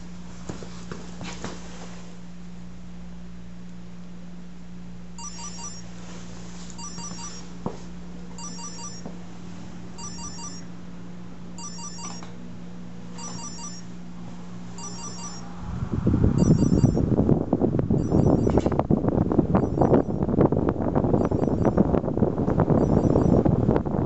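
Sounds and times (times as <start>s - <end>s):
electric fan humming: 0.0s - 24.0s
phone alarm beeps: 5.2s - 5.9s, 6.8s - 7.5s, 8.4s - 9.1s, 10.0s - 10.7s, 11.6s - 12.3s, 13.2s - 14.0s, 14.8s - 15.5s, 16.4s - 17.0s, 18.0s - 18.7s, 19.6s - 20.2s, 21.2s - 21.9s, 22.8s - 23.4s.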